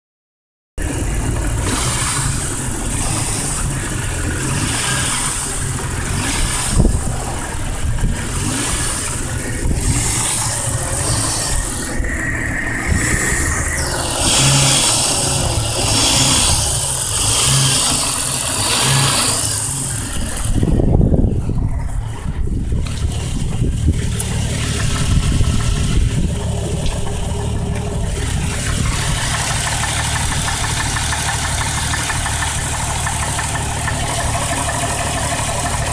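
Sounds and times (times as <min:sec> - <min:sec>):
car engine knocking: 0:00.8 - 0:35.9.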